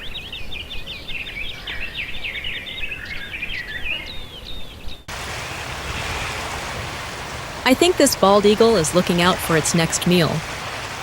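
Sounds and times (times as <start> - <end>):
birds chirping: 0.0 - 11.0
steady rushing hiss: 5.1 - 11.0.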